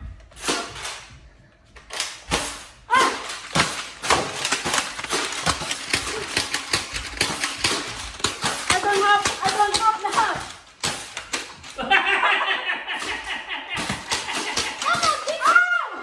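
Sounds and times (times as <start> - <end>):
toy blasters clicking and firing: 1.9 - 11.8, 13.0 - 15.7.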